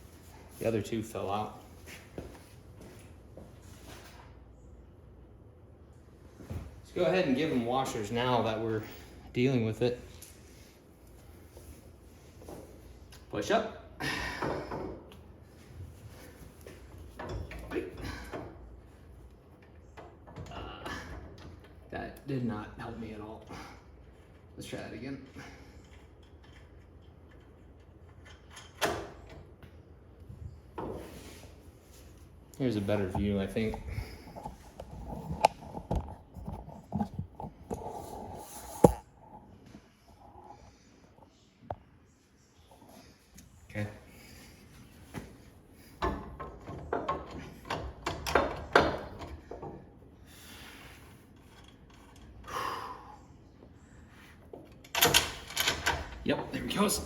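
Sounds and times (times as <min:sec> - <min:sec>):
metal parts clicking and tapping: 0:54.7 - 0:56.2.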